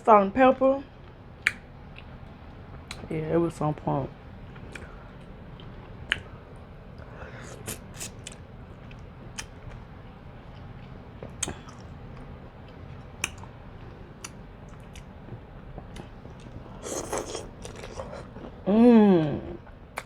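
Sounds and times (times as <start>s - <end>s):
sharp wet clicks: 1.4s - 2.1s, 6.1s - 6.3s, 13.2s - 13.5s
chewing and mouth smacking: 7.4s - 9.8s, 10.5s - 18.6s.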